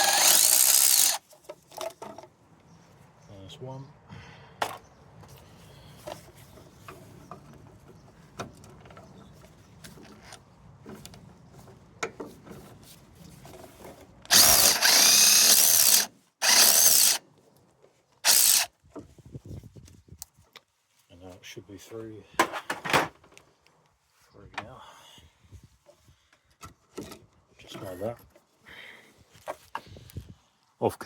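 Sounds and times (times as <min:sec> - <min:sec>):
cordless power tool running: 0:00.0 - 0:01.2, 0:14.3 - 0:17.2, 0:18.2 - 0:18.7.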